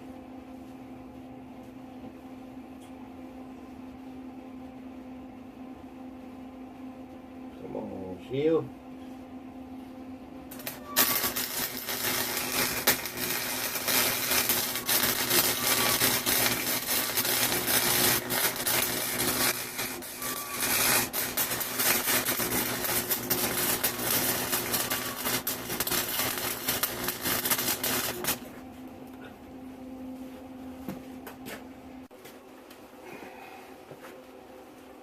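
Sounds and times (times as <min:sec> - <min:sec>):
steady hum: 0:00.0 - 0:35.0
welder arc crackling: 0:10.5 - 0:28.5.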